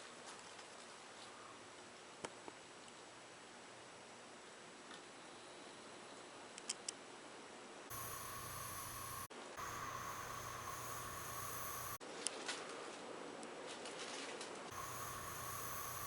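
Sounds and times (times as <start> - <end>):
ceiling fan motor hum: 7.8 - 12.0, 14.7 - 16.0.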